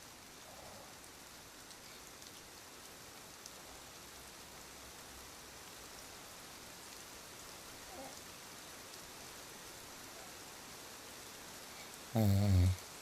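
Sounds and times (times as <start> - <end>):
rain-like hiss: 0.0 - 13.0
faint ticks: 0.4 - 3.8.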